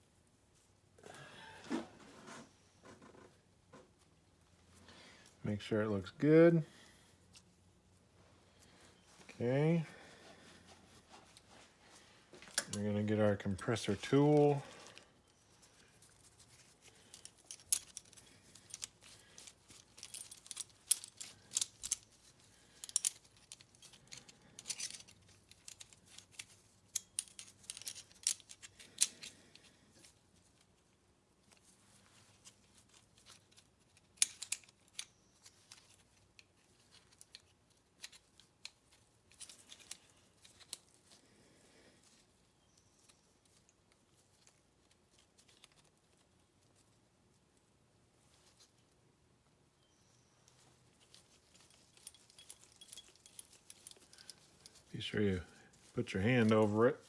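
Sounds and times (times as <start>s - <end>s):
metal hand tools clinking: 17.0s - 29.3s, 51.2s - 57.0s.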